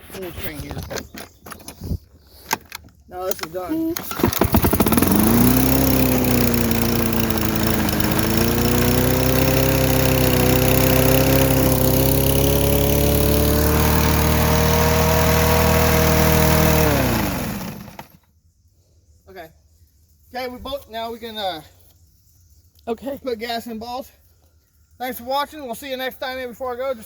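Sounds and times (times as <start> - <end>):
lawn mower engine: 2.4 - 18.2.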